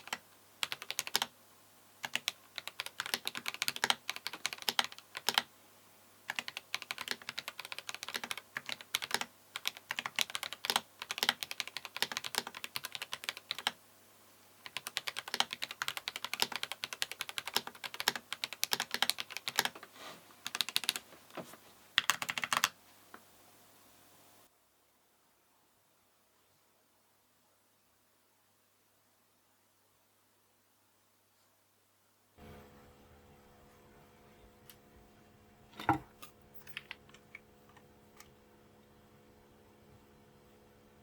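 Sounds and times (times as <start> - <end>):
typing on mechanical keyboard: 0.0 - 1.3, 2.0 - 5.5, 6.3 - 13.8, 14.6 - 19.8, 20.4 - 21.0, 22.0 - 22.8, 36.6 - 37.4.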